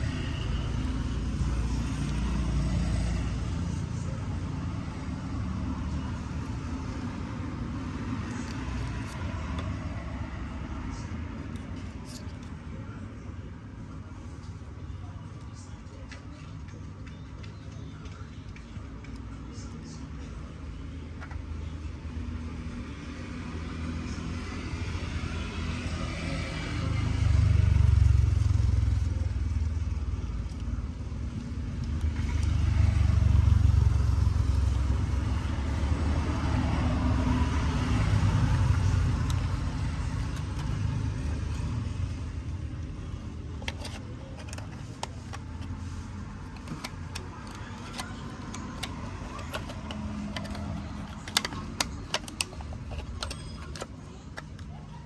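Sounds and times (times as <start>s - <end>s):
vehicle engine rumbling: 0.0s - 15.8s, 19.5s - 55.0s
light clicks and taps: 43.6s - 54.8s.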